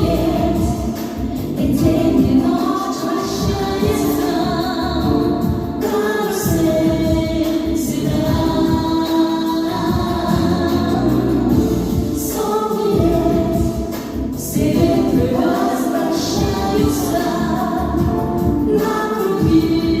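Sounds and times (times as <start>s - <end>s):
instrumental backing: 0.0s - 20.0s
choir singing long notes: 8.6s - 20.0s.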